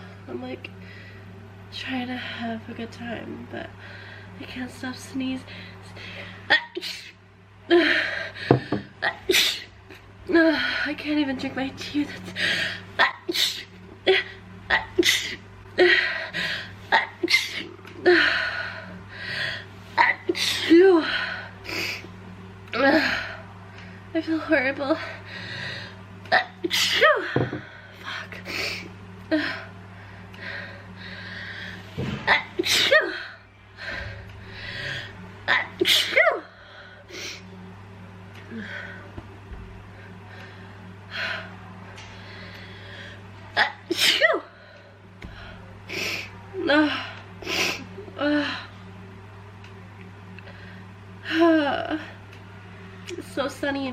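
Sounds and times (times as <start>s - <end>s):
noisy breathing: 0.0s - 1.5s, 3.7s - 4.4s, 5.4s - 6.5s, 12.1s - 12.9s, 15.8s - 16.9s, 18.1s - 20.0s, 25.0s - 26.1s, 27.4s - 32.2s, 33.2s - 35.4s, 36.5s - 37.6s, 39.8s - 43.4s, 44.5s - 48.8s, 50.4s - 53.0s.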